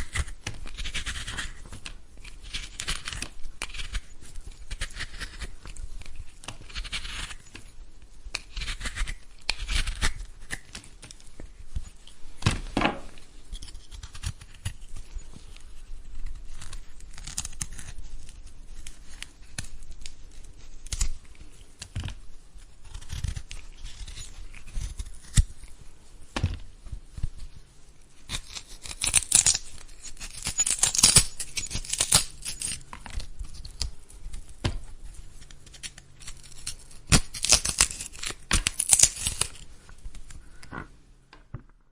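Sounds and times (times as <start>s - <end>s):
vegetable peeling strokes: 0.0s - 7.7s, 8.3s - 12.3s, 13.1s - 25.8s, 28.2s - 40.4s.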